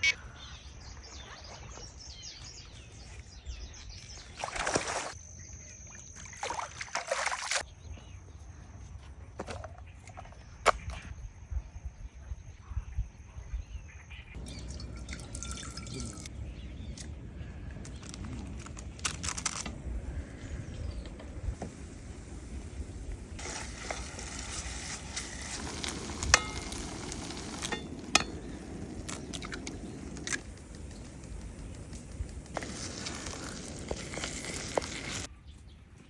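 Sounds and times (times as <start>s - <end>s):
water sloshing and trickling: 4.0s - 5.2s, 5.8s - 7.6s, 14.4s - 17.1s, 32.6s - 35.3s.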